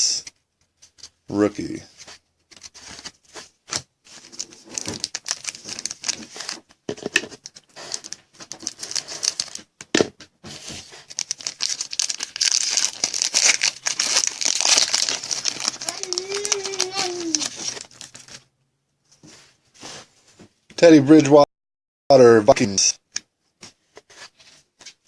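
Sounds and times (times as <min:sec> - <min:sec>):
foil wrapper crinkling and tearing: 0:04.2 - 0:06.7, 0:07.4 - 0:09.7, 0:11.0 - 0:18.4.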